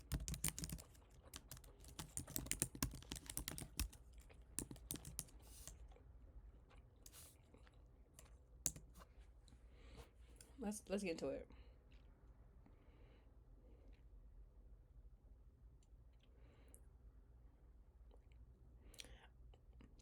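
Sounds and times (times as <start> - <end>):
keyboard key clicks: 0.0 - 0.8, 1.4 - 4.0.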